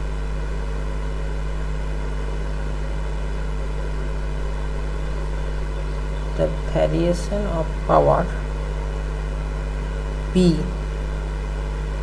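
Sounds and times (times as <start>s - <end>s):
low electrical hum: 0.0s - 12.0s
constant low tones: 3.5s - 12.0s.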